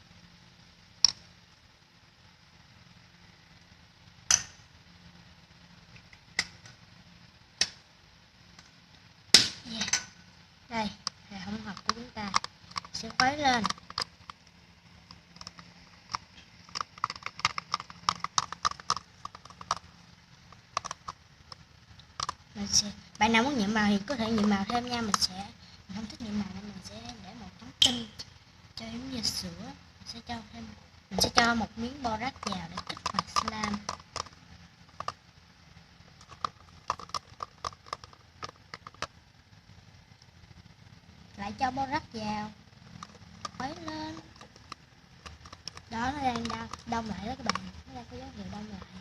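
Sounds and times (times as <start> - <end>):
spoon stirring thick slime: 11.6 - 14.4, 15.0 - 21.2, 31.2 - 35.2, 36.1 - 39.2, 43.0 - 49.0.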